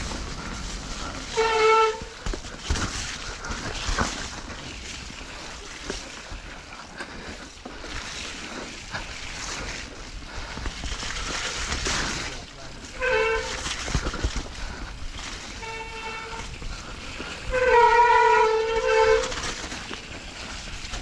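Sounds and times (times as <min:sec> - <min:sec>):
bike knocks and rattles: 0:00.0 - 0:06.2, 0:10.5 - 0:21.0
tyre and wind noise: 0:00.0 - 0:21.0.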